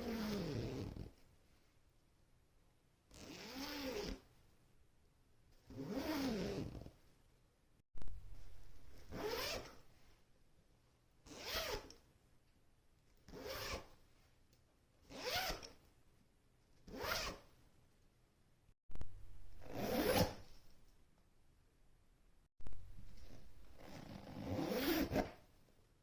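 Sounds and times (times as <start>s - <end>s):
zipper zipping: 0.0s - 1.2s, 3.1s - 4.2s, 5.7s - 7.0s, 9.0s - 9.8s, 11.3s - 11.9s, 13.3s - 13.9s, 15.1s - 15.7s, 16.9s - 17.5s, 19.5s - 20.5s, 23.1s - 25.4s.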